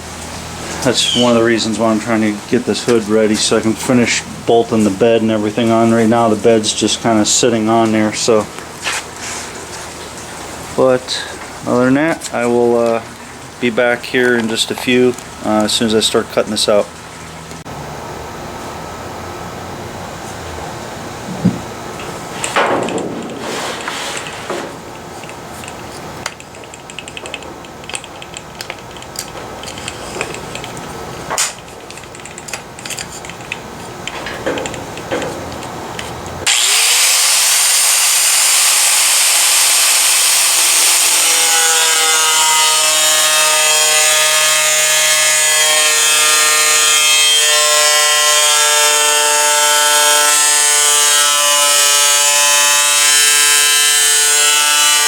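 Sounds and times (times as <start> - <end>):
knocks and handling rattles: 21.3 - 36.4
power tool cutting sheet metal: 36.4 - 55.0.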